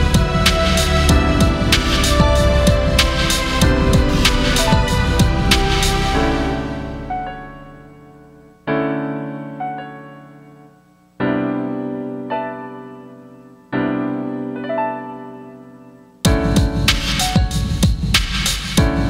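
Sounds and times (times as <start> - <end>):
drum beat: 0.0 - 6.2, 16.3 - 19.0
slow piano chords: 0.0 - 19.0.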